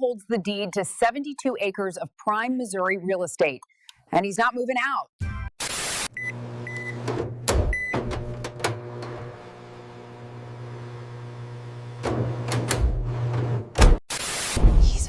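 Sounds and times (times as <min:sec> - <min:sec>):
microwave beeping: 0:06.1 - 0:14.0
microwave humming: 0:06.2 - 0:14.0.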